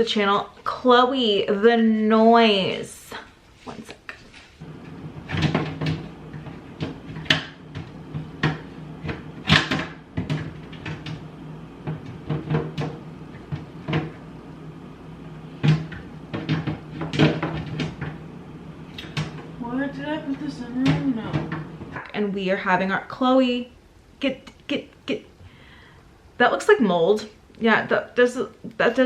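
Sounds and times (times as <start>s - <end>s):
steady low hum: 0.0s - 29.0s
cupboard doors knocking: 5.1s - 14.3s, 15.6s - 18.2s, 19.0s - 22.0s.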